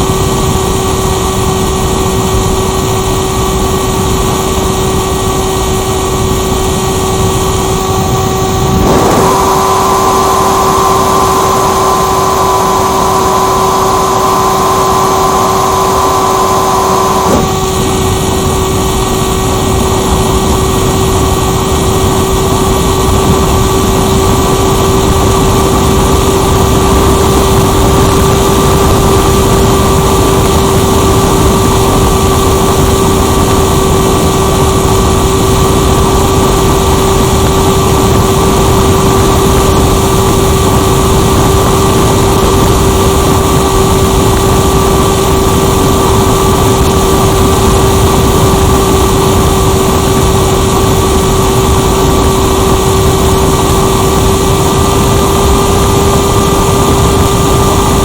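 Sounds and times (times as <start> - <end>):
motor and propeller whine: 0.0 - 58.0
wind rushing over airframe: 0.0 - 58.0
higher tone: 5.6 - 20.0.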